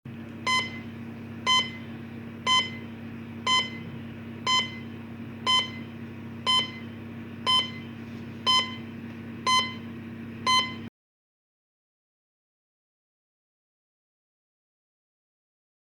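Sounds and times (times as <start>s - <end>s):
steady low hum: 0.1s - 10.9s.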